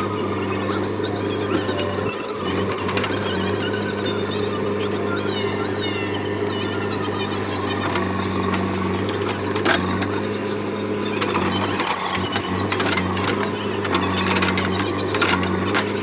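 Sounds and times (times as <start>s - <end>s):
diesel engine running: 0.0s - 16.0s.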